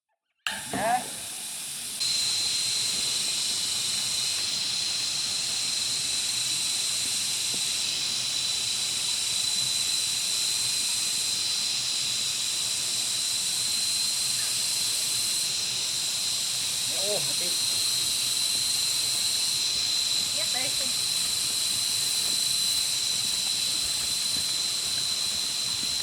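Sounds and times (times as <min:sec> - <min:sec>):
insect chorus shrilling: 0:00.7 - 0:26.0.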